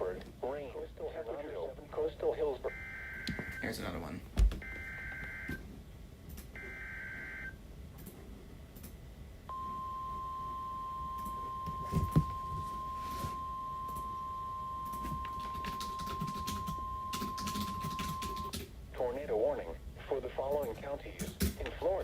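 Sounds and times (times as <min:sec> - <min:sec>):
high-pitched warning alarm tone: 0:06.6 - 0:07.6, 0:09.5 - 0:18.5.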